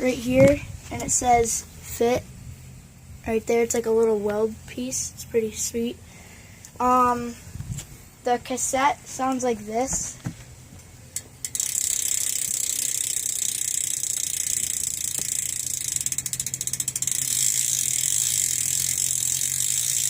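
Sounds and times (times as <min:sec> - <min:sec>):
bike hub ratcheting clicks: 0:11.2 - 0:20.0.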